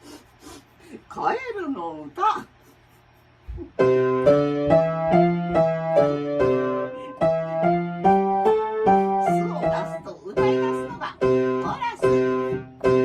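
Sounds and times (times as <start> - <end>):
piano playing notes over bass: 3.8 - 13.0.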